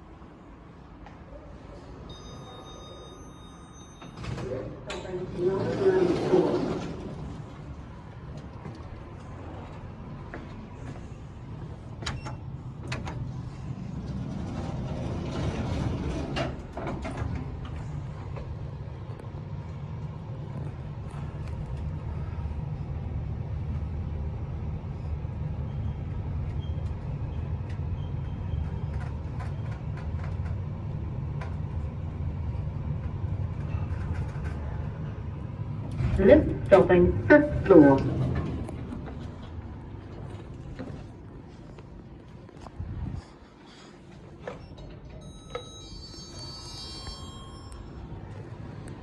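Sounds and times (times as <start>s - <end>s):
lift travelling with low hum: 0.0s - 49.0s
lift doors sliding shut: 2.1s - 10.0s, 11.0s - 19.0s, 25.6s - 41.1s.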